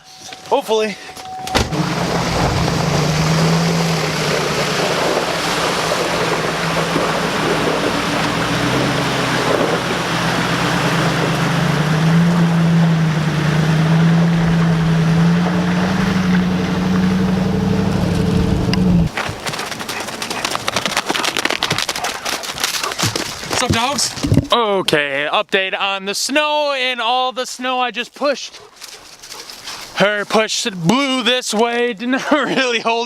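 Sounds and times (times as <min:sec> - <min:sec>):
road and wind noise: 0:00.0 - 0:24.5
vehicle engine running: 0:01.3 - 0:21.3.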